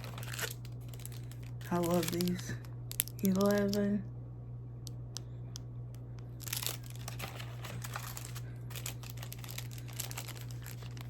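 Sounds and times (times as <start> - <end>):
plastic packaging crinkling: 0.0 - 4.0, 6.4 - 11.0.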